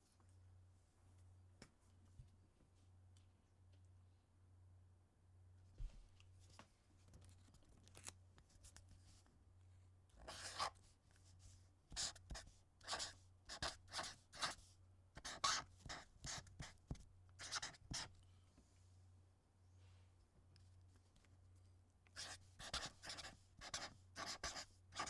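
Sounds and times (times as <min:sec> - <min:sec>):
marker scratching on surface: 0:10.3 - 0:10.7, 0:11.9 - 0:14.6, 0:15.2 - 0:18.1, 0:22.2 - 0:25.0.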